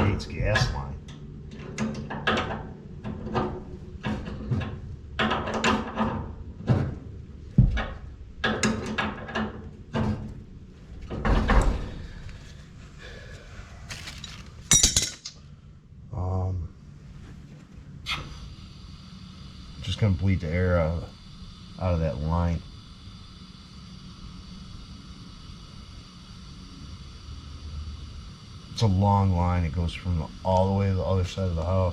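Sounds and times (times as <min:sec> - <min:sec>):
metal fittings and tools clinking: 0:13.9 - 0:15.4.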